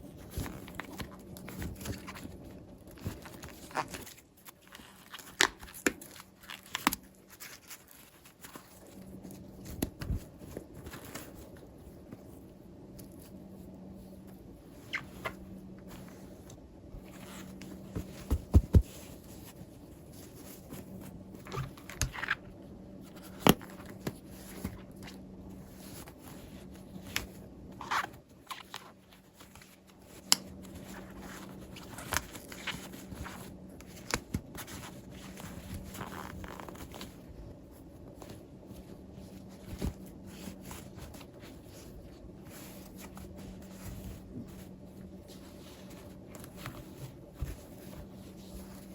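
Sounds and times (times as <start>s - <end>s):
faint low hum: 0.0s - 48.9s.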